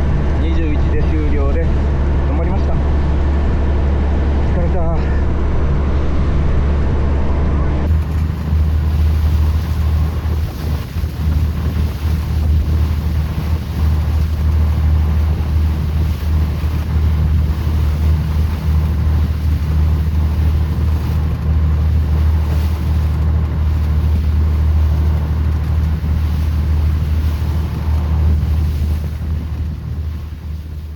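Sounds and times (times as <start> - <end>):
boat engine humming: 0.0 - 30.9
wind buffeting microphone: 7.9 - 30.9.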